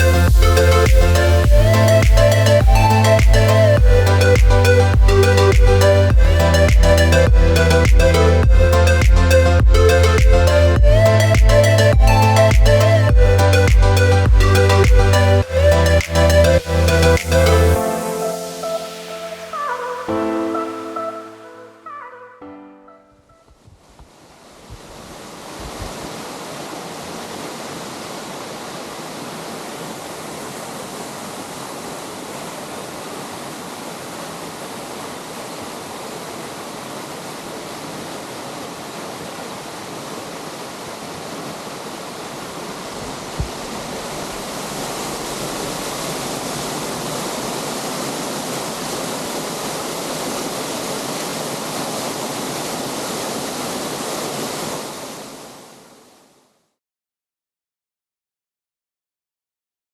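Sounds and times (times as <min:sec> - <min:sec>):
waterfall roaring: 0:24.2 - 0:56.0.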